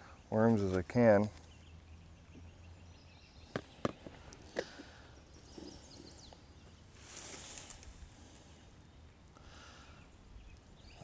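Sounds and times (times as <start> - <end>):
brief rustle: 7.0 - 8.0.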